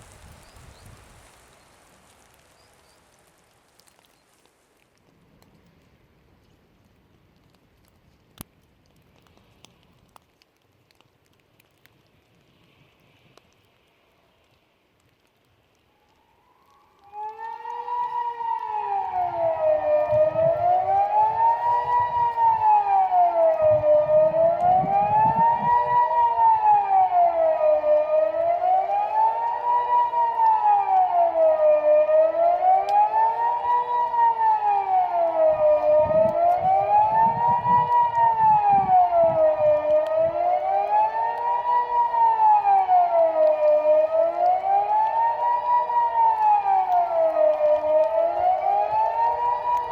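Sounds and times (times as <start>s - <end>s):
electronic siren rising and falling: 16.6s - 49.9s.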